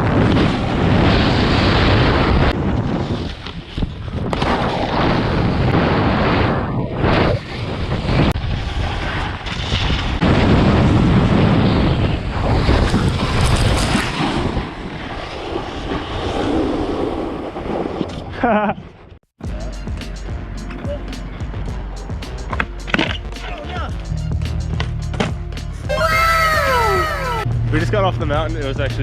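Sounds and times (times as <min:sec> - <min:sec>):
wind rushing over microphone: 0:00.0 - 0:18.4
snowboard scraping over icy snow: 0:00.0 - 0:18.7.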